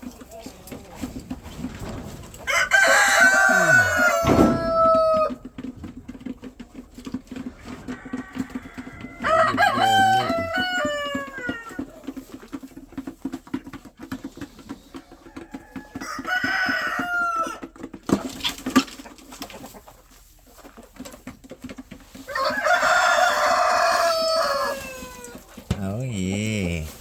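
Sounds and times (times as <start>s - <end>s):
chickens clucking: 0.0s - 27.0s
rooster crowing: 2.5s - 5.4s, 7.8s - 11.7s, 15.6s - 17.6s, 22.3s - 25.4s.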